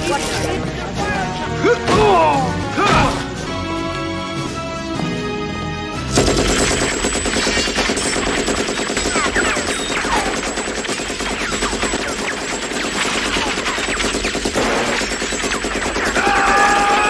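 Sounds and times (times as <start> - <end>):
dramatic orchestral music: 0.0 - 8.7
rapid machine-gun fire: 6.1 - 17.0.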